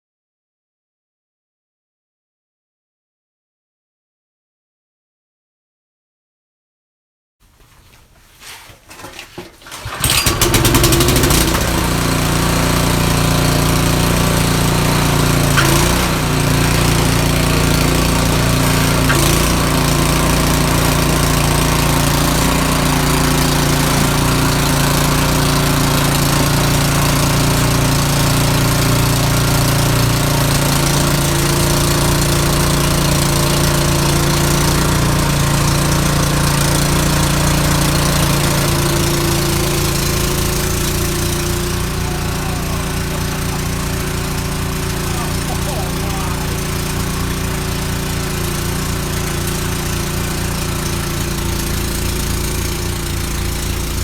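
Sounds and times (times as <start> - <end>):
small engine running: 9.7 - 54.0.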